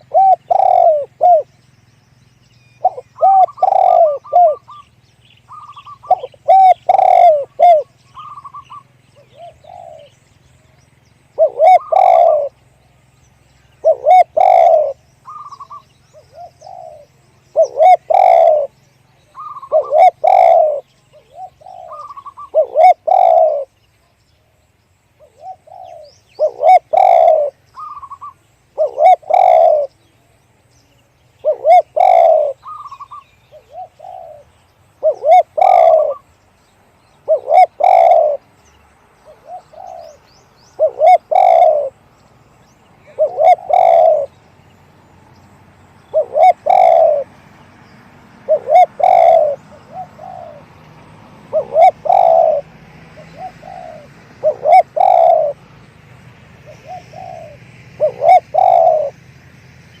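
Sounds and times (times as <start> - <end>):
dove cooing: 0.0 - 1.6, 2.8 - 10.2, 11.3 - 12.7, 13.7 - 23.8, 25.2 - 30.0, 31.3 - 36.3, 37.2 - 38.5, 39.2 - 42.0, 43.0 - 44.4, 46.0 - 47.4, 48.4 - 55.7, 56.6 - 59.2.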